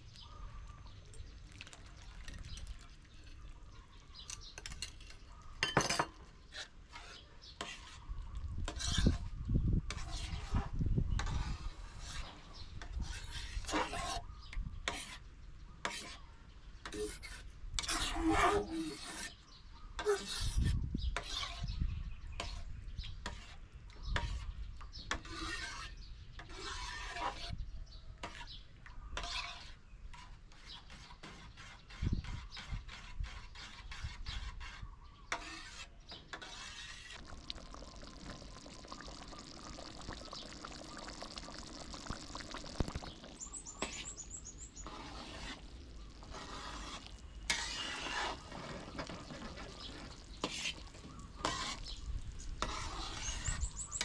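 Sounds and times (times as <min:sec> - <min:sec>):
liquid pouring and stirring: 0:01.2 - 0:03.8, 0:09.9 - 0:19.4, 0:20.0 - 0:20.6, 0:35.4 - 0:54.0.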